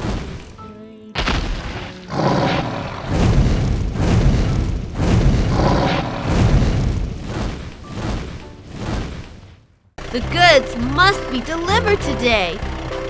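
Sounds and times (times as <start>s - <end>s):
heavy booms with rumbling crashes: 3.1s - 7.2s
musical notes: 10.0s - 13.0s.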